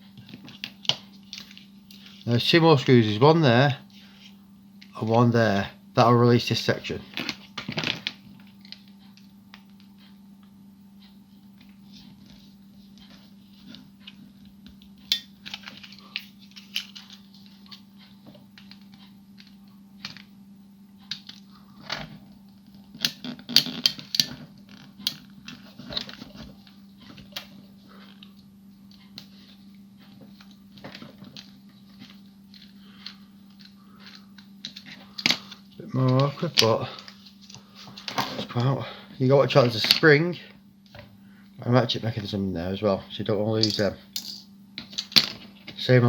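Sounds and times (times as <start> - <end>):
steady low hum: 0.0 - 46.0.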